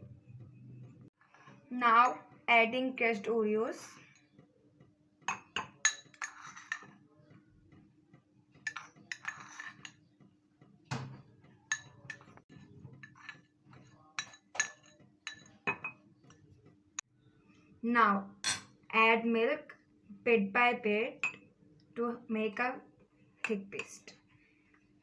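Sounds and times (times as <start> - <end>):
spoon clinking and scraping a mug: 5.3 - 7.0, 8.6 - 10.1, 11.7 - 16.4.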